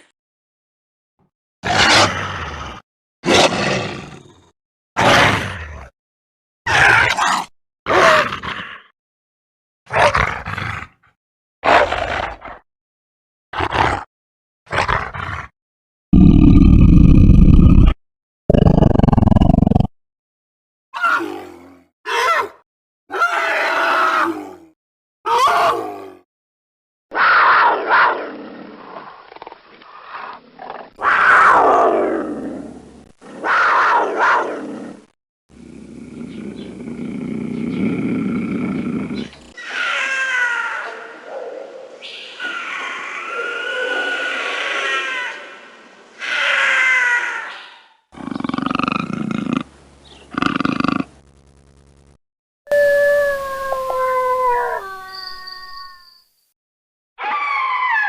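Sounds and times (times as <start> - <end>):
rattling creature roars: 1.7 - 5.9, 13.6 - 14.1, 16.2 - 19.9, 21.0 - 21.9, 48.2 - 49.7, 50.3 - 51.2
steady low creature sound: 16.2 - 19.9
creature screech: 27.1 - 28.1, 39.6 - 41.0, 42.4 - 45.6, 46.2 - 48.0, 52.7 - 56.2, 57.2 - 58.0
loud animal-like calls: 39.6 - 41.2, 42.3 - 49.7, 52.7 - 55.6
long creature howl: 39.6 - 41.8, 42.4 - 45.6, 46.2 - 47.7, 52.7 - 55.9, 57.2 - 58.0.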